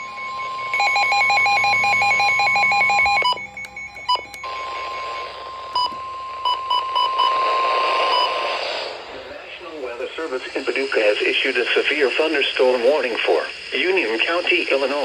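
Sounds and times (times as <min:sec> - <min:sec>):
higher beeps: 0:00.0 - 0:08.4
fast beeping alarm: 0:00.0 - 0:08.7
steady warning tone: 0:00.0 - 0:15.0.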